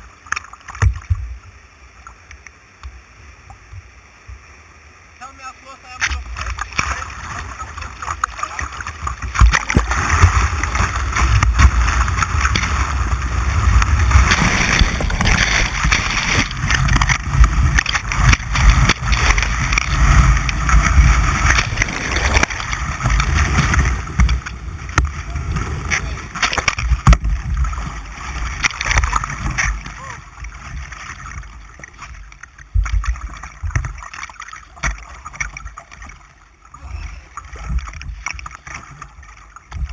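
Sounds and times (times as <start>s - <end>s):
white-water rapids rushing: 4.9s - 39.9s
wind buffeting on microphone: 6.4s - 31.5s.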